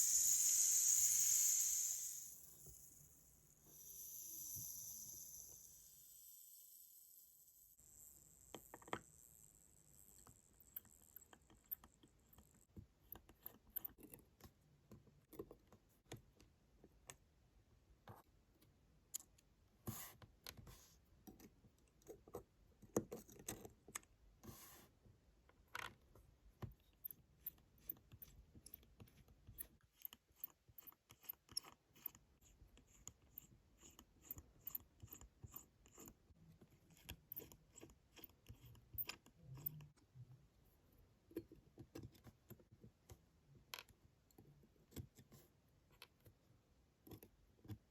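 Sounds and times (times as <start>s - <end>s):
small metal tools clicking and scraping: 26.8s - 36.2s, 36.9s - 40.0s.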